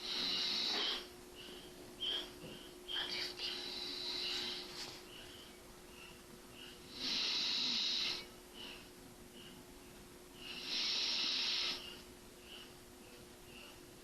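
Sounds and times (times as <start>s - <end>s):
quiet breaths: 0.0s - 14.0s
man snoring: 6.9s - 8.2s, 10.6s - 11.8s.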